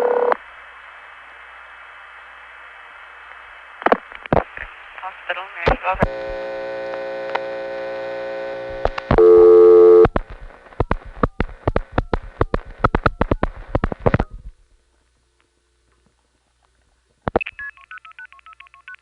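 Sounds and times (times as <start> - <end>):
buzzy telephone line tone: 0.0 - 0.4, 6.1 - 10.1
louder telephone tone: 0.0 - 0.4, 6.1 - 10.1.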